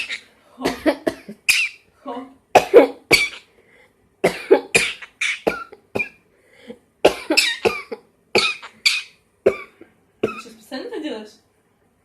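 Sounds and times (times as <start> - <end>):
parrot mimicking coughs: 0.0 - 1.8, 2.5 - 3.5, 4.2 - 6.2, 7.0 - 10.6.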